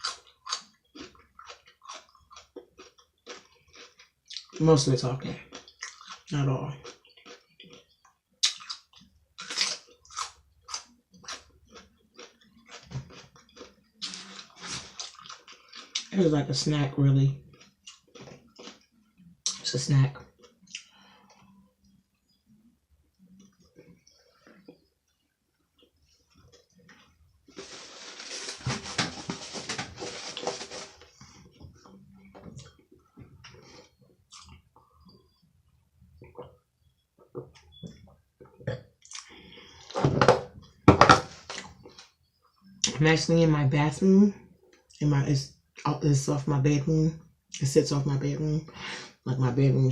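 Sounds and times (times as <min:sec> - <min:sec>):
person chewing food: 0:00.0 - 0:04.6, 0:05.3 - 0:16.1, 0:17.4 - 0:19.6, 0:23.2 - 0:37.0.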